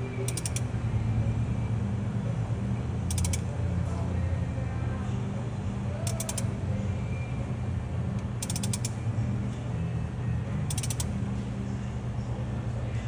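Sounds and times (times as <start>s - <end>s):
mechanical creaking and clicking: 0.1s - 0.7s, 3.1s - 3.5s, 6.1s - 6.5s, 8.2s - 9.0s, 10.7s - 11.2s.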